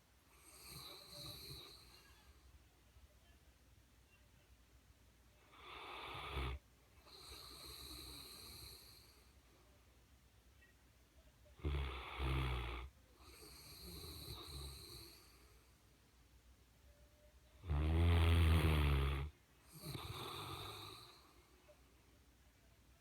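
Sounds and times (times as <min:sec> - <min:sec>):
dog snoring: 0:00.4 - 0:02.2, 0:05.5 - 0:09.2, 0:11.6 - 0:15.5, 0:17.6 - 0:21.3.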